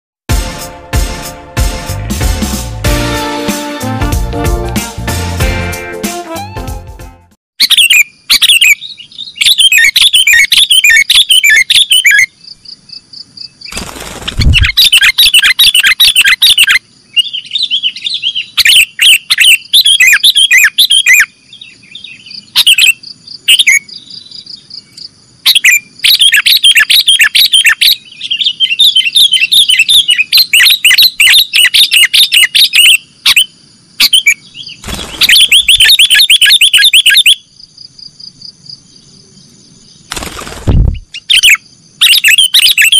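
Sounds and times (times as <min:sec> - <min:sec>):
bulbul singing rapid chirps: 0:13.4 - 0:17.4, 0:28.6 - 0:37.4.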